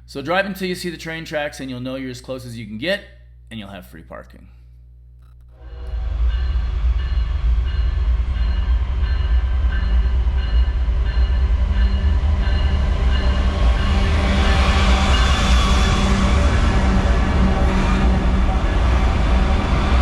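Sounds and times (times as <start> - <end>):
train rumbling past: 5.6 - 20.0.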